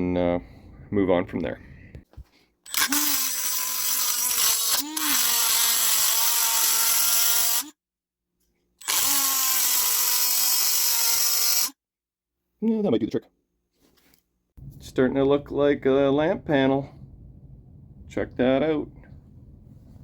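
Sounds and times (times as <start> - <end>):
rotary tool grinding: 2.7 - 7.8, 8.8 - 11.8.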